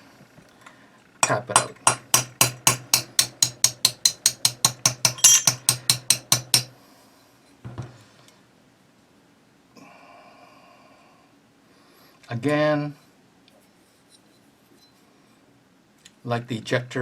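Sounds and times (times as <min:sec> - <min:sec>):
hammer tapping metal punch: 0:01.2 - 0:06.7
soft knock: 0:07.6 - 0:08.0.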